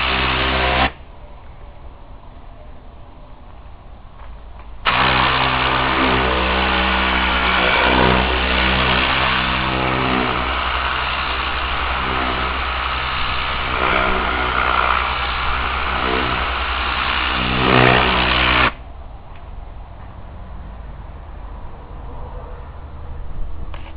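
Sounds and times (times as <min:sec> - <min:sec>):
compressed-air gun hissing: 0:04.8 - 0:18.7.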